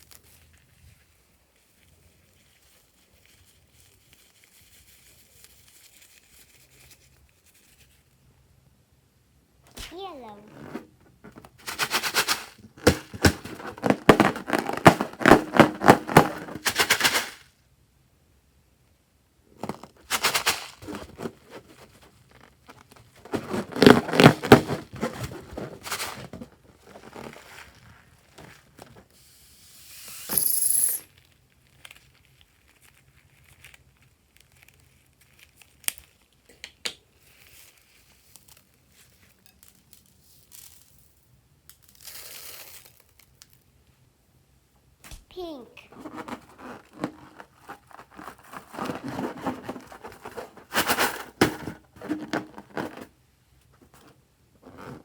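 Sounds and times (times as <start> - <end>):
slime crackling and popping: 31.3 - 38.7.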